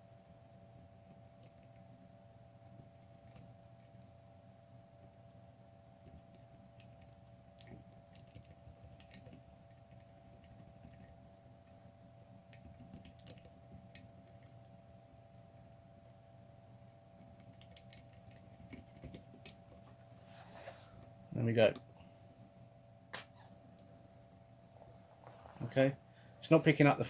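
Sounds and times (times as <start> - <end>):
faint steady hum: 0.0 - 27.0.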